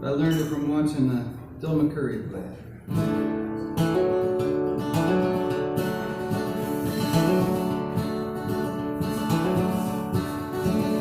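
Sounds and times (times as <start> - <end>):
fingerpicked acoustic guitar: 2.7 - 11.0.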